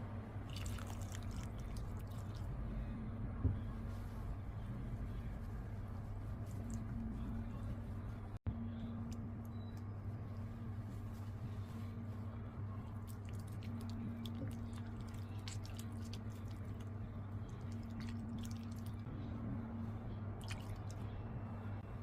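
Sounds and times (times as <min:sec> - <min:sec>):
low hum: 0:00.0 - 0:22.0
dough squishing in a bowl: 0:00.4 - 0:02.6, 0:08.9 - 0:19.1.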